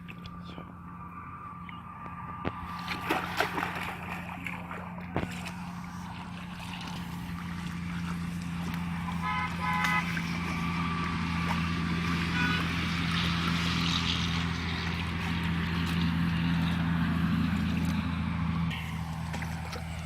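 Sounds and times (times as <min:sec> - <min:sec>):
small boat motor humming: 0:00.0 - 0:20.0
high pulsing toot: 0:08.7 - 0:14.3.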